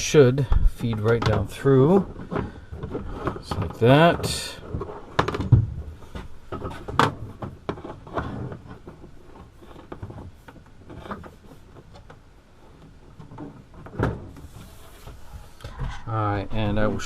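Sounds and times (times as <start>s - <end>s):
rustling scrapes of a cord: 6.0s - 12.0s, 12.6s - 16.1s.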